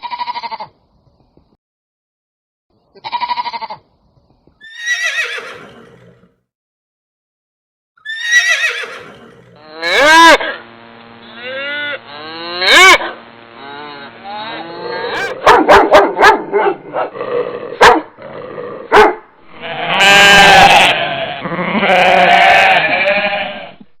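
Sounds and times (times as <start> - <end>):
animal calls: 8.0 - 10.7.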